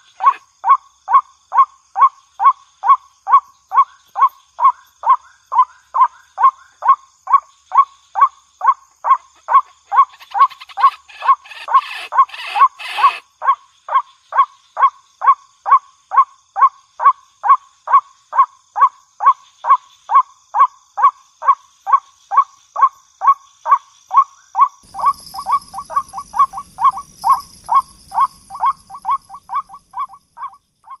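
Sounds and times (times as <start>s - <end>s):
waterhen calling: 0.0s - 0.4s, 9.1s - 13.2s, 24.8s - 31.0s
hiss with low rumble: 24.9s - 30.0s.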